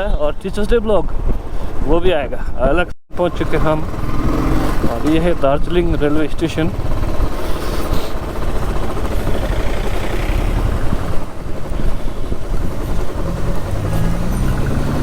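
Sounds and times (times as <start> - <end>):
road and wind noise: 0.0 - 15.0
motorcycle engine running: 3.2 - 15.0.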